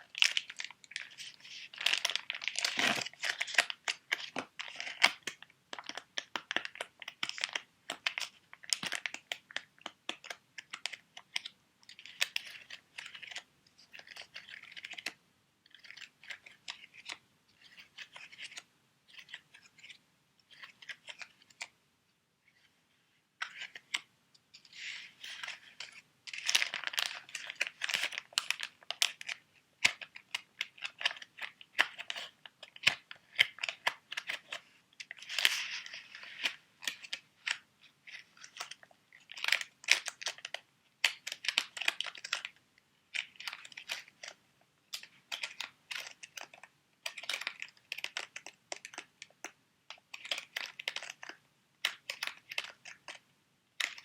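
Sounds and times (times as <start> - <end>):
plastic packets crinkling: 0.0 - 21.7, 24.6 - 42.5, 50.1 - 53.2.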